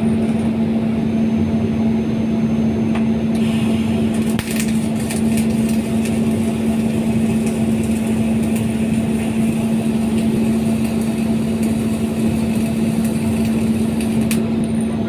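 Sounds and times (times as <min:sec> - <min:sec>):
constant hum: 0:00.0 - 0:15.0
welding arc crackling: 0:03.3 - 0:14.7.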